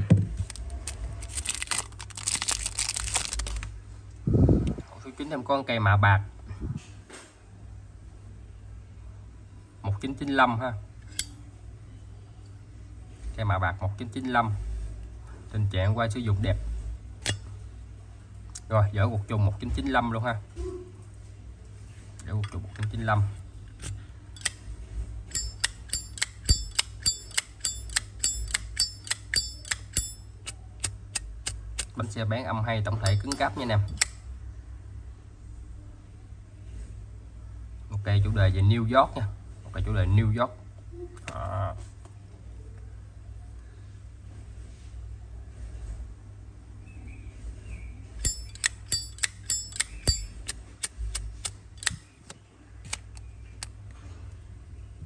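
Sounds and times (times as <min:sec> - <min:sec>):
metallic lighter clicks: 0:25.3 - 0:31.9, 0:48.2 - 0:52.1.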